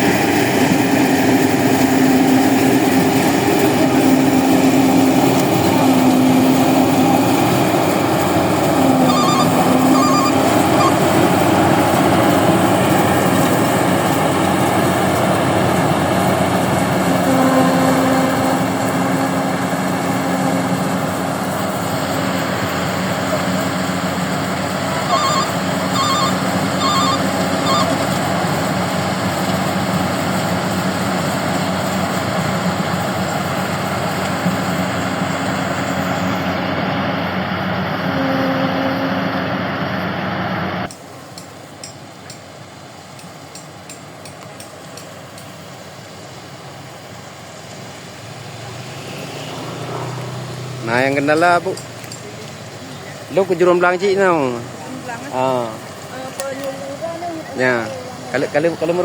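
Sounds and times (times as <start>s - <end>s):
combine harvester engine drone: 0.0s - 59.0s
high beeps: 9.0s - 11.0s, 24.9s - 28.0s.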